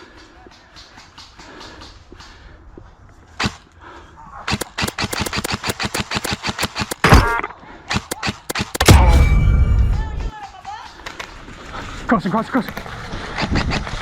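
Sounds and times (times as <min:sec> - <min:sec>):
airsoft guns firing: 0:04.5 - 0:09.2.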